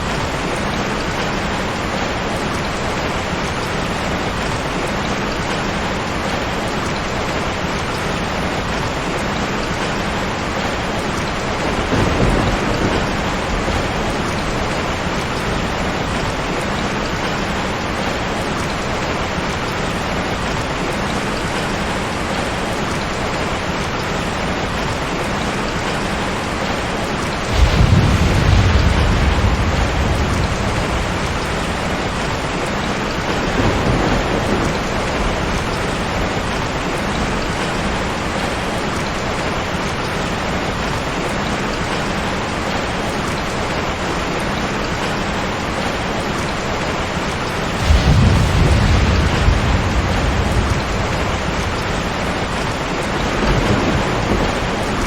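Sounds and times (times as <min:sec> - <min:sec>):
steady rain: 0:00.0 - 0:55.0
thunder rumbling: 0:10.4 - 0:22.2, 0:27.4 - 0:39.7, 0:46.8 - 0:55.0
thunder peal: 0:11.4 - 0:16.4, 0:27.5 - 0:37.6, 0:47.6 - 0:55.0.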